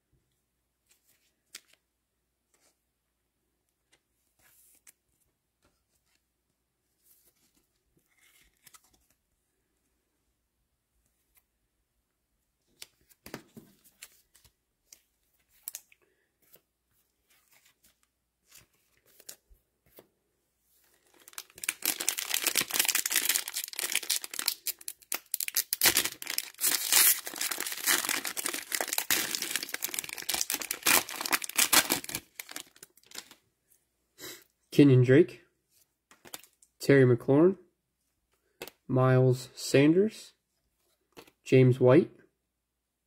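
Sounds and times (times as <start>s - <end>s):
plastic wrapper tearing and crinkling: 21.0s - 33.4s.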